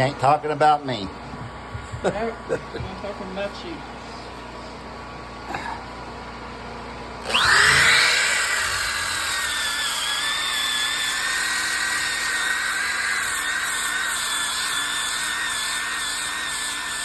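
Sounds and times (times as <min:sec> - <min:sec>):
electric sander whining: 0:07.2 - 0:17.0.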